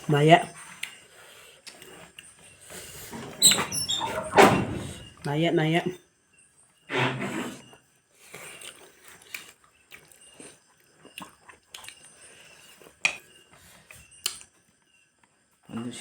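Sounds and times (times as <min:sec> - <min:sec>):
person chewing food: 0:00.7 - 0:03.0, 0:08.2 - 0:14.6.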